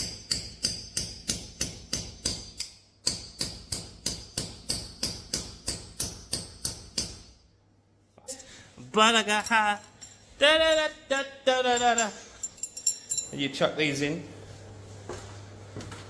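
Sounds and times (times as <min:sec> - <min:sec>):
hammer striking metal: 0:00.0 - 0:07.4.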